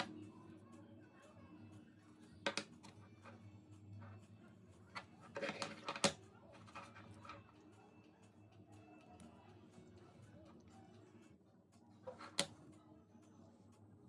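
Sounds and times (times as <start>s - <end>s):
small objects clicking on a desk: 2.4s - 3.0s, 4.9s - 7.4s.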